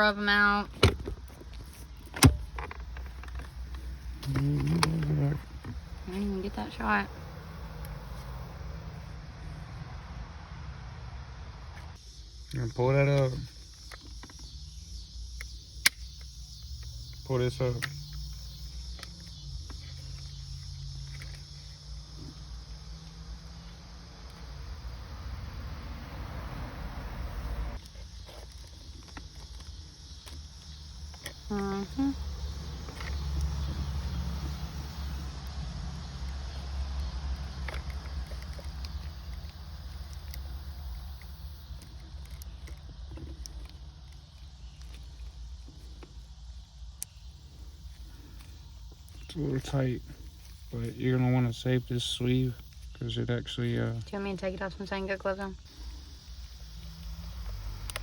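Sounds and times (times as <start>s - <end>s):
high insect-like chirring: 0.0s - 10.6s, 11.5s - 58.0s
low hum: 55.6s - 58.0s.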